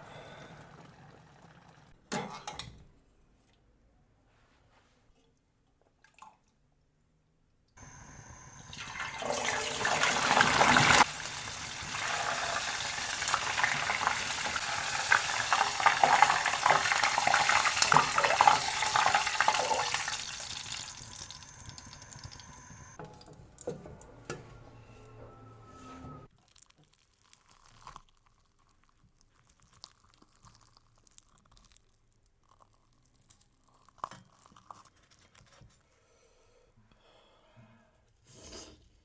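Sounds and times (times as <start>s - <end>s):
food sizzling in hot oil: 7.8s - 23.0s.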